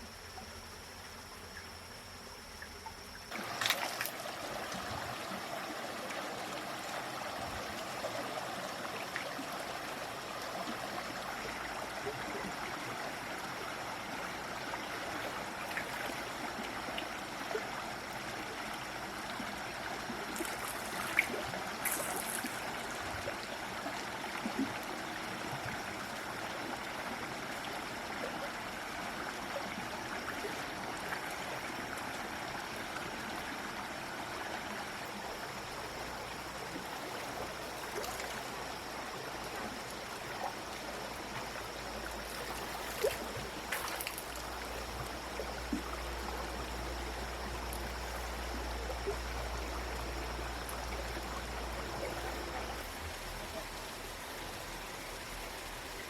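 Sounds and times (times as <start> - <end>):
running water rushing: 3.3 - 17.3, 19.1 - 25.9, 35.9 - 56.0.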